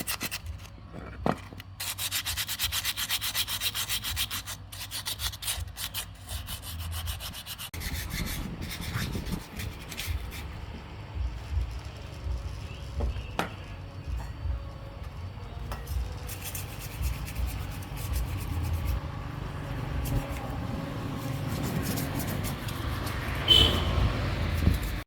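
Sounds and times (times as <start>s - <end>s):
rubbing and scraping: 0.0s - 14.7s, 15.7s - 25.0s.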